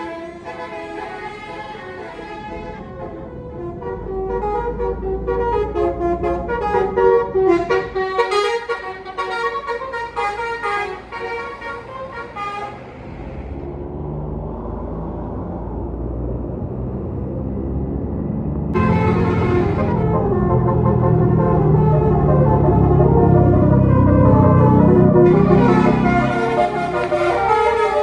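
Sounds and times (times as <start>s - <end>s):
musical bus horn tune: 0.0s - 12.9s, 18.8s - 28.0s
bus engine rumble: 0.0s - 28.0s.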